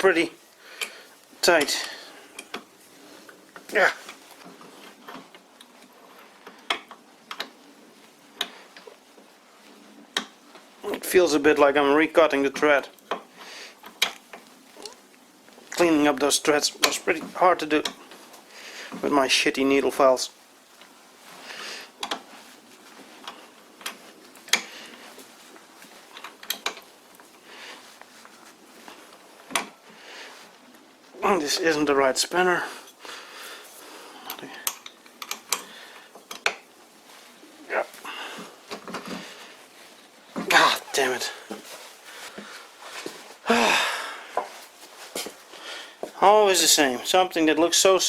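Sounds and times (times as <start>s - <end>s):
hand tools clicking and knocking: 23.2s - 25.3s, 26.0s - 26.9s, 34.2s - 36.7s.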